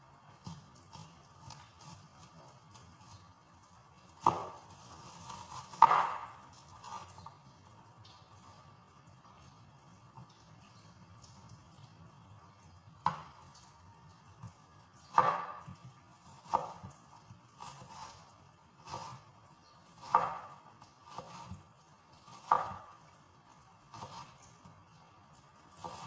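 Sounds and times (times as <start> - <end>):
knife chopping onion on board: 4.2 - 7.0, 15.1 - 17.0, 18.8 - 21.6, 22.2 - 23.1, 23.8 - 24.7, 25.8 - 26.0.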